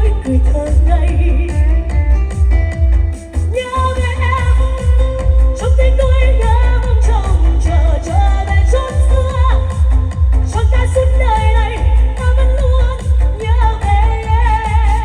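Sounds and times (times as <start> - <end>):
pop backing track with heavy bass: 0.0 - 15.0
person singing: 3.5 - 15.0.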